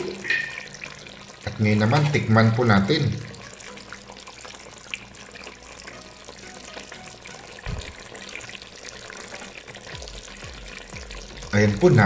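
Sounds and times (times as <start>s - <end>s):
sauce sizzling and bubbling in pan: 0.0s - 12.0s
dull low thump: 7.6s - 8.1s.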